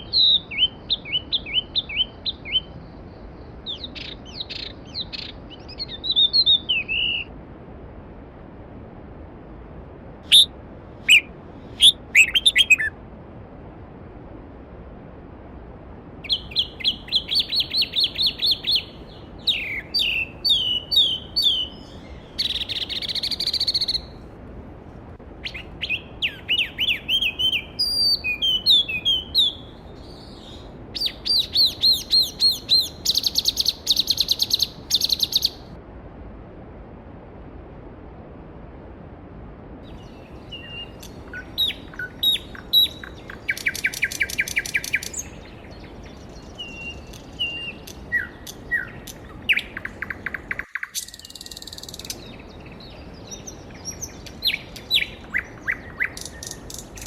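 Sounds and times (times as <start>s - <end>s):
songbird singing trills: 0.0s - 7.3s, 10.3s - 12.9s, 16.2s - 24.2s, 25.4s - 35.7s, 39.9s - 57.0s
stream rushing: 4.2s - 36.3s, 37.8s - 57.0s.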